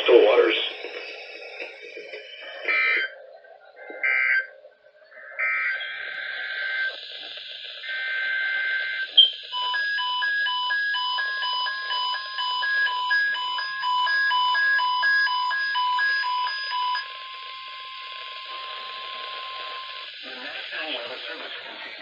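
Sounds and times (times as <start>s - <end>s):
radio hiss: 0.0s - 9.6s, 17.4s - 22.0s.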